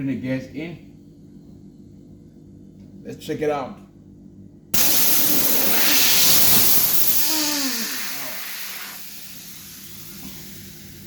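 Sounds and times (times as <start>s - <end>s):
pressurised gas rushing hiss: 4.8s - 11.0s.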